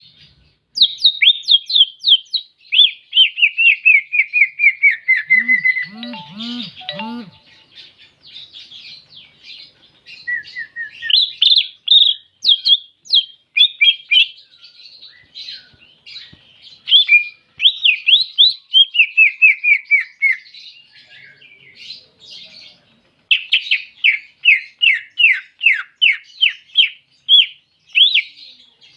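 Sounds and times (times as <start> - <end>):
bird singing rapid whistled phrases: 0.8 - 7.6, 10.2 - 14.4, 15.1 - 20.5, 23.3 - 28.4.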